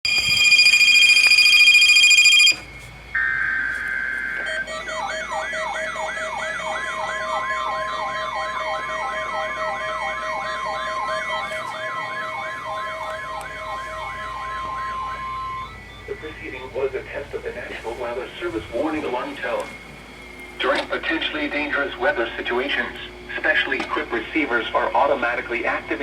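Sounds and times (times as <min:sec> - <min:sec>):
steady tone: 0:00.0 - 0:20.4
loud steady alarm tone: 0:00.0 - 0:23.4
short beep: 0:00.1 - 0:04.7
rising siren-like sweep: 0:00.1 - 0:17.0.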